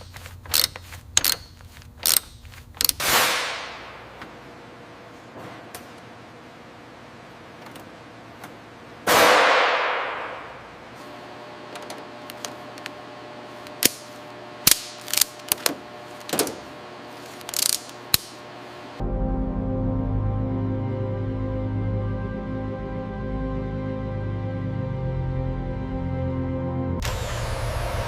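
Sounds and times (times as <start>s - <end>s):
sharp metallic clicks and knocks: 0.0s - 3.1s
background music: 19.0s - 28.0s.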